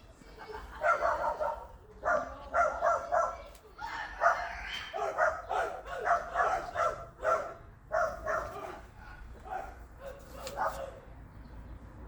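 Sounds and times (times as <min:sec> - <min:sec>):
dog barking: 0:00.8 - 0:03.5, 0:04.1 - 0:11.1.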